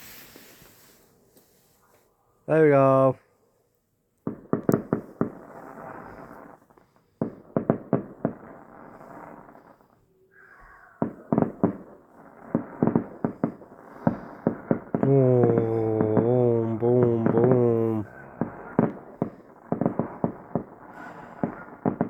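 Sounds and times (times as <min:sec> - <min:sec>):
distant fireworks bangs: 0:04.3 - 0:09.9, 0:10.5 - 0:22.0.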